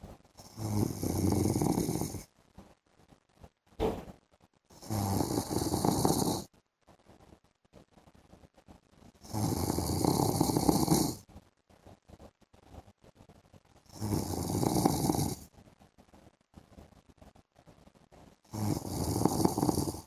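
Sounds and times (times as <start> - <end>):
man snoring: 0.4 - 2.2, 4.8 - 6.4, 9.3 - 11.2, 13.9 - 15.4, 18.5 - 20.0.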